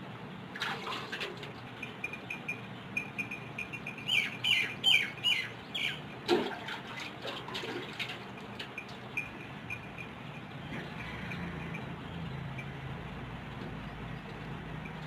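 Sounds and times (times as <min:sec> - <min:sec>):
birds chirping: 0:01.6 - 0:06.3
bird squawks: 0:04.0 - 0:06.1
lower bird call: 0:04.0 - 0:06.1.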